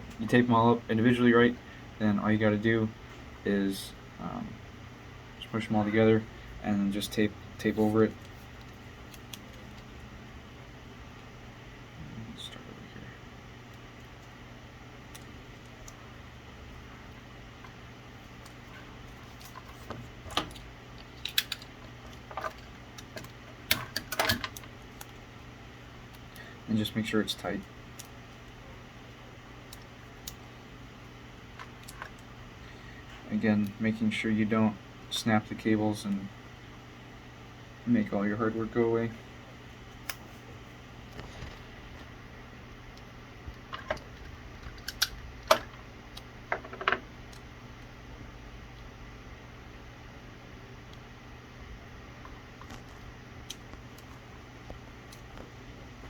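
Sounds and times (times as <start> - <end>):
steady low hum: 0.0 - 56.0
tape and cable crackling: 7.5 - 10.2, 13.4 - 33.9, 39.8 - 48.9, 51.8 - 56.0.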